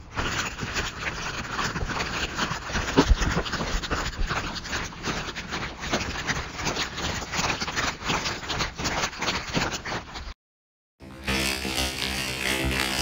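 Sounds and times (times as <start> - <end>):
plastic rattle shaken: 0.0 - 10.3.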